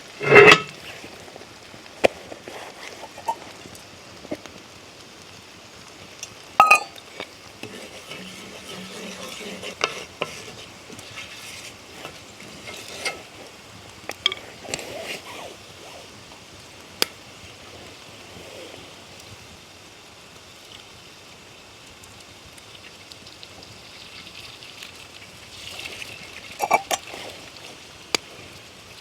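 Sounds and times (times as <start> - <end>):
food sizzling in a pan: 0.0 - 29.0
utensil clinking and scraping pan: 0.1 - 1.2, 2.4 - 3.4, 6.6 - 16.0, 25.8 - 27.5.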